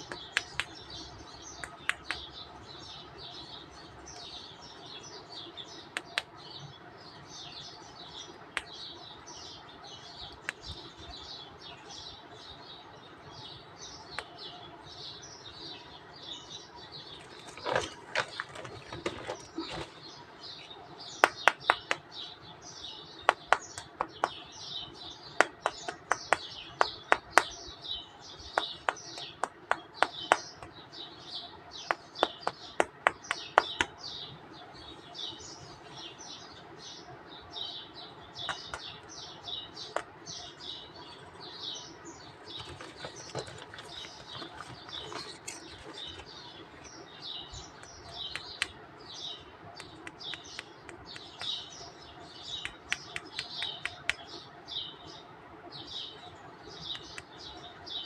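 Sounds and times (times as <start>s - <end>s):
sharp clicks and taps: 0.0s - 0.8s, 1.6s - 2.3s, 5.9s - 6.4s, 10.3s - 10.8s, 21.2s - 22.1s, 23.3s - 24.5s, 25.4s - 27.6s, 28.5s - 30.8s, 31.9s - 34.0s, 38.4s - 39.2s, 39.8s - 40.4s, 47.7s - 48.9s, 49.7s - 51.8s, 52.4s - 54.4s, 56.8s - 57.4s
small birds chirping: 0.0s - 58.0s.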